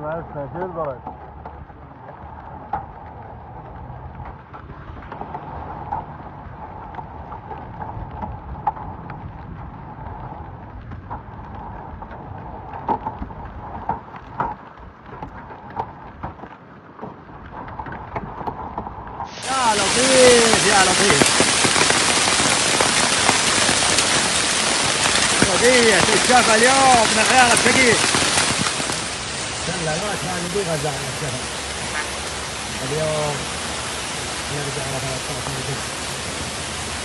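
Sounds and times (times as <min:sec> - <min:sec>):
hail and rain falling: 0:19.2 - 0:37.0
hailstones striking a surface: 0:19.2 - 0:37.0.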